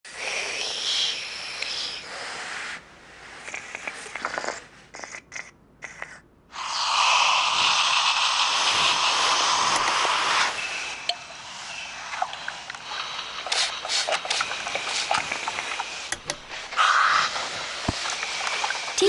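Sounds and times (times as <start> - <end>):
steam iron hissing: 6.6 - 19.0.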